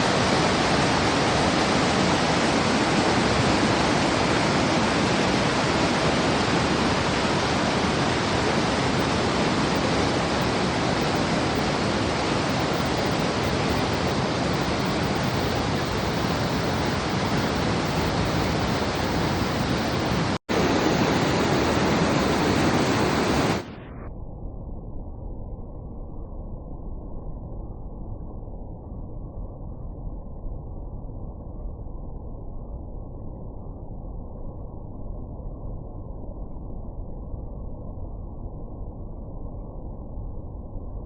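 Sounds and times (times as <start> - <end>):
river water roaring: 0.0 - 23.7.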